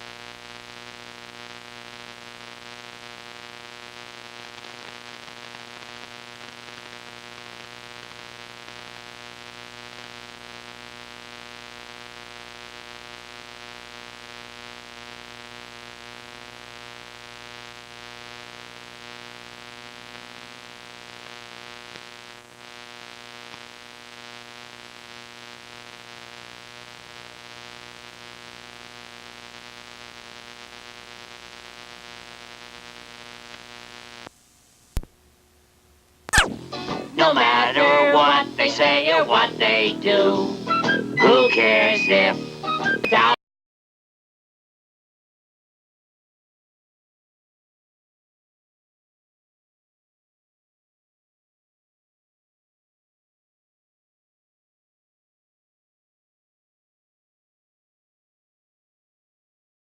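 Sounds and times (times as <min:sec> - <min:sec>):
buzzing electrical hum: 0:00.0 - 0:43.4
tape hiss: 0:00.0 - 0:43.4.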